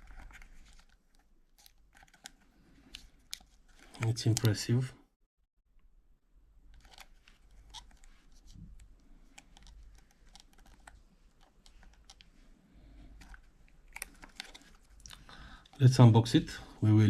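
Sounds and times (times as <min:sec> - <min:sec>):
faint clicks and taps handling packaging: 0:00.0 - 0:04.6, 0:06.7 - 0:12.3, 0:13.2 - 0:15.9.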